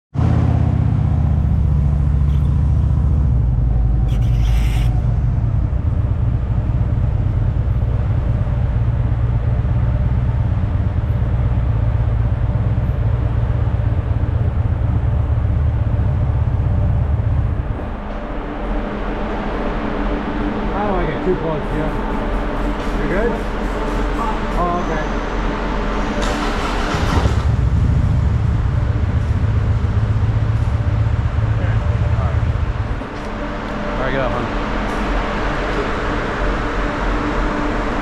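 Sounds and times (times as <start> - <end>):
motorcycle engine rumbling: 0.2 - 18.0, 26.2 - 36.8.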